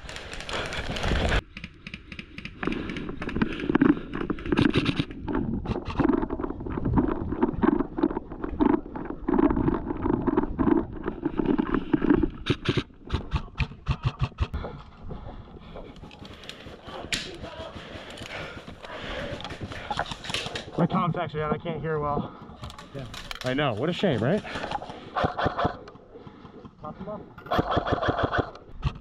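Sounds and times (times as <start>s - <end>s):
running footsteps: 6.6s - 20.9s.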